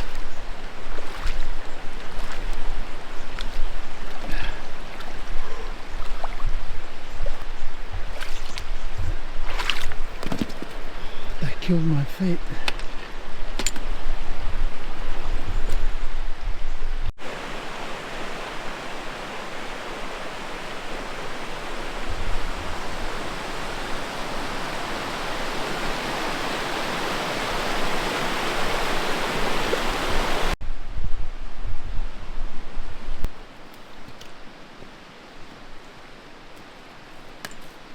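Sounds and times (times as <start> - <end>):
river water rushing: 0.0 - 9.9, 17.2 - 30.6.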